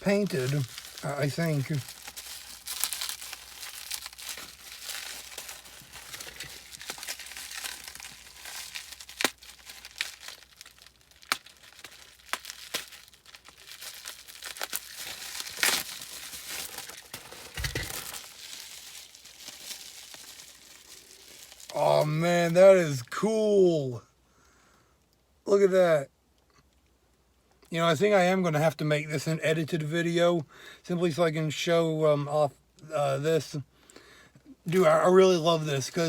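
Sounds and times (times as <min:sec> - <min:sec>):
plastic packaging crinkling: 0:00.0 - 0:22.2.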